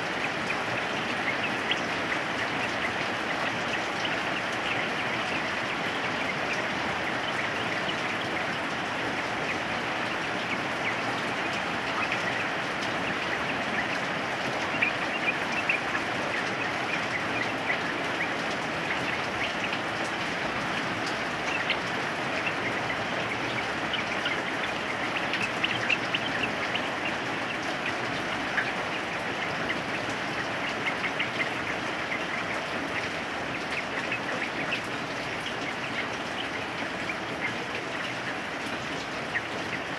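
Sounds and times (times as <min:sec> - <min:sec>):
birds bubbling calls: 0:00.0 - 0:39.9
steady rain: 0:00.0 - 0:39.9.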